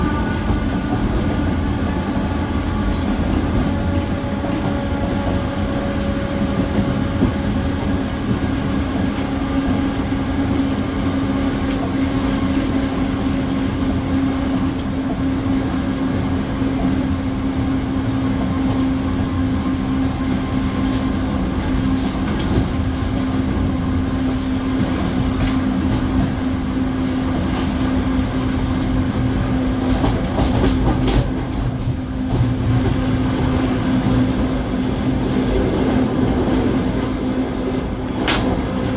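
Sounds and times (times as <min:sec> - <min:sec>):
train interior rumble and hum: 0:00.0 - 0:38.9.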